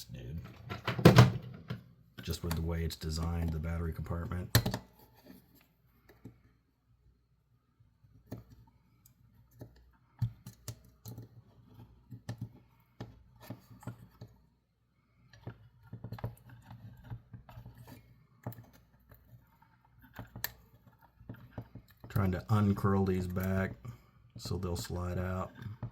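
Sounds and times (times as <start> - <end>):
hand tools clicking and scraping metal: 15.3 - 25.9.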